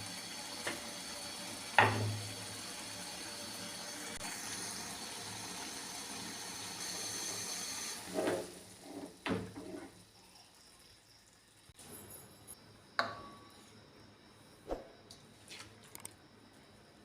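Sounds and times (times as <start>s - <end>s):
food sizzling in a pan: 0.0s - 11.2s.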